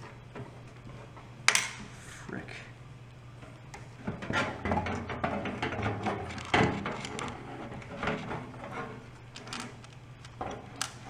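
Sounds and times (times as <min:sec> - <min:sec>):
screwdriver clicking on metal case: 0:09.3 - 0:11.0.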